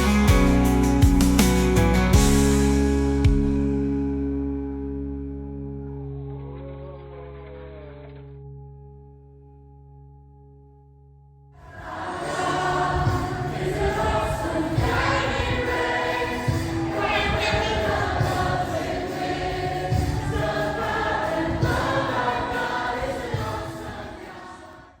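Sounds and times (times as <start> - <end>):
steady bass: 0.0 - 24.0
choir singing held notes: 11.6 - 25.0.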